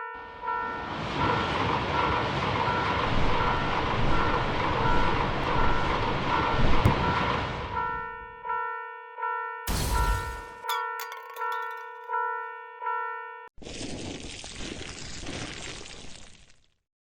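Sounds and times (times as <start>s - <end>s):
level crossing warning bell: 0.0s - 13.5s
train rushing past: 0.2s - 8.2s.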